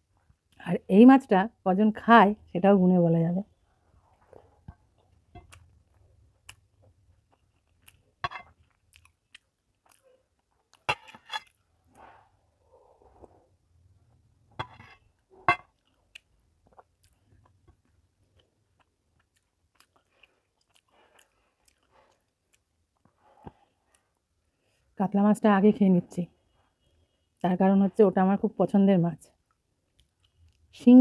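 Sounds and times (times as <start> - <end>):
wet chewing: 4.1 - 12.1, 15.7 - 24.3.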